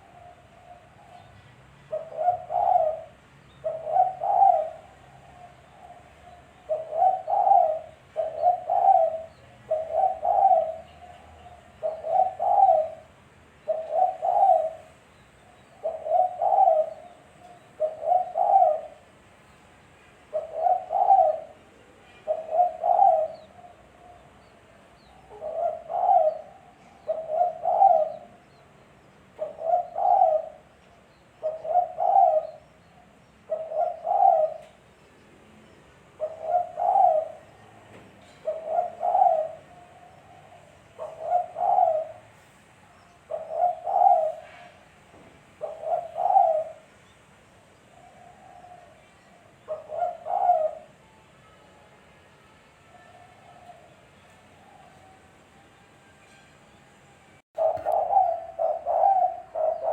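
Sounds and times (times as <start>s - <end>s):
dove cooing: 0.0s - 15.0s, 15.7s - 19.1s, 20.3s - 24.3s, 25.0s - 28.6s, 29.3s - 30.7s, 31.4s - 32.7s, 33.4s - 34.8s, 36.2s - 42.6s, 43.2s - 44.9s, 45.5s - 46.9s, 47.9s - 51.0s, 57.6s - 59.9s.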